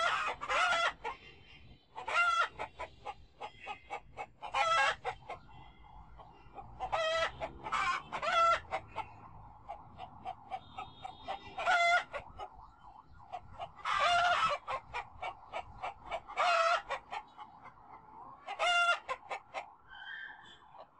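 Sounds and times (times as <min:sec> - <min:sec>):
loud poultry calls: 0:00.0 - 0:12.6, 0:13.3 - 0:20.9
rapid clucking: 0:00.0 - 0:19.8.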